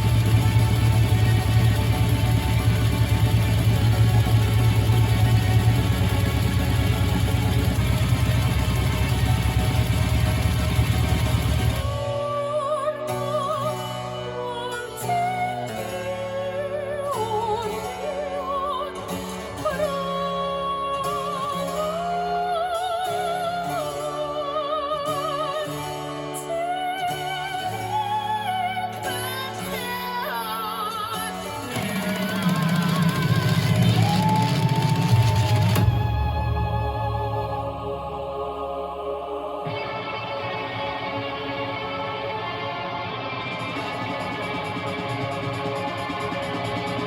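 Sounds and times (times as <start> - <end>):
low sustained accompaniment: 0.0 - 20.8
operatic singing: 0.0 - 47.0.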